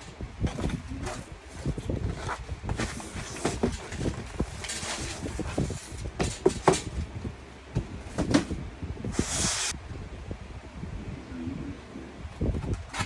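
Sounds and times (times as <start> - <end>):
cardboard sliding and rustling: 0.5 - 6.8, 9.1 - 9.8.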